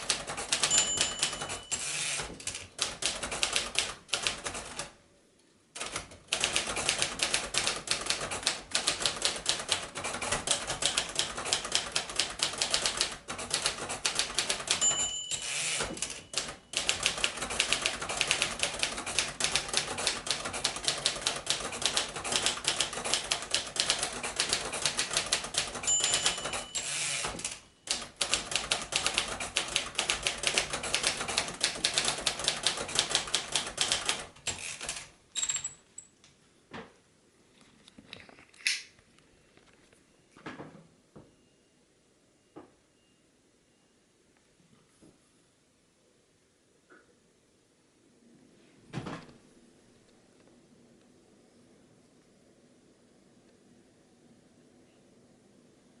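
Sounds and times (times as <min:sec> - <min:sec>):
typewriter keystroke clacks: 0:00.0 - 0:05.0, 0:05.8 - 0:35.7
typewriter bell ringing: 0:00.1 - 0:02.3, 0:13.9 - 0:18.4, 0:24.3 - 0:29.4, 0:33.8 - 0:36.1.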